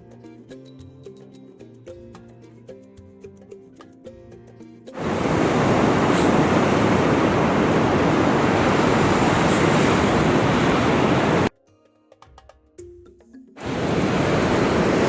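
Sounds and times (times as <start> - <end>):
soft plucked-string music: 0.0 - 5.0
ocean surf rushing: 5.0 - 11.5, 13.6 - 15.0
wind on microphone: 5.0 - 11.5, 13.6 - 15.0.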